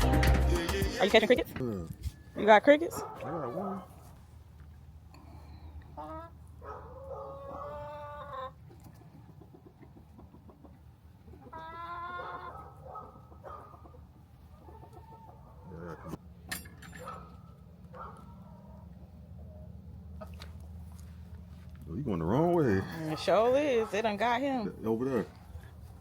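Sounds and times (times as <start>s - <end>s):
chickens clucking: 5.9s - 16.2s.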